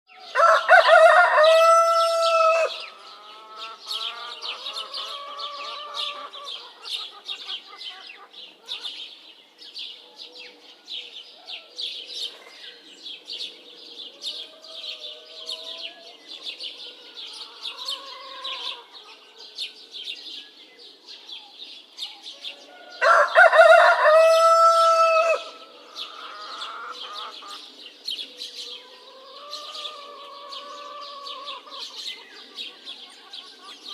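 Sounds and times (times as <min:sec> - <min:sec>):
small birds chirping: 0:00.1 - 0:33.9
rooster crowing: 0:00.2 - 0:06.3, 0:22.5 - 0:27.3
chickens clucking: 0:00.4 - 0:09.0, 0:14.1 - 0:19.5, 0:22.5 - 0:33.9.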